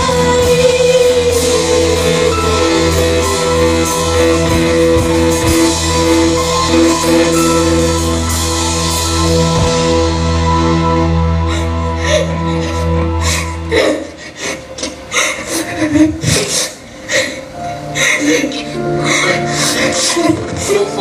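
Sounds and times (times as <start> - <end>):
rock music with guitar and drums: 0.0 - 11.3.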